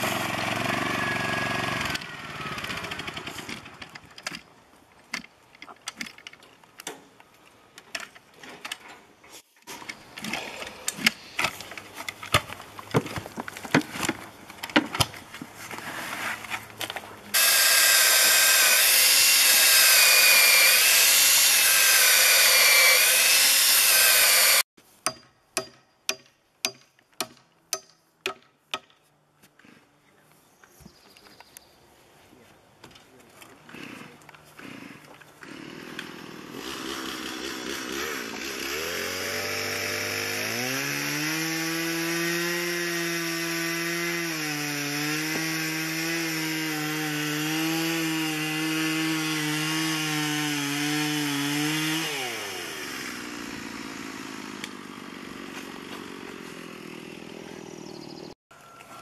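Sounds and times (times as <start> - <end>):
power tool running: 0.0 - 3.6, 17.3 - 24.7, 35.4 - 43.7, 44.4 - 58.2.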